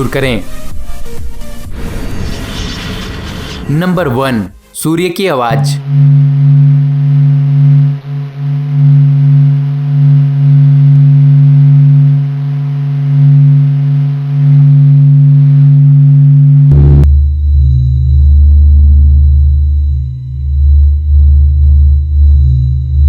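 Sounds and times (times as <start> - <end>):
deep rumble: 5.8 - 23.0
low droning hum: 5.8 - 23.0.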